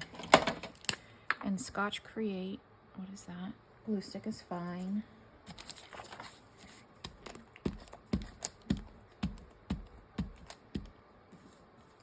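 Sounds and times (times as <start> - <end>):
hands tapping craft materials: 7.0 - 11.0.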